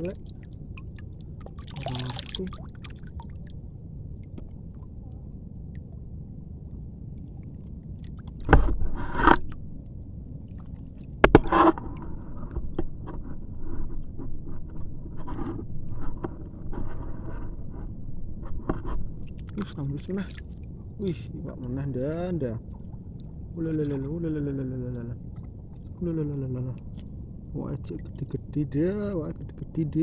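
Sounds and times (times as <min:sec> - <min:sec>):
water sloshing and splashing: 0:00.0 - 0:17.8, 0:18.4 - 0:24.1, 0:24.9 - 0:28.5
steady low rumble: 0:00.0 - 0:30.0
loud splashes: 0:01.6 - 0:03.4.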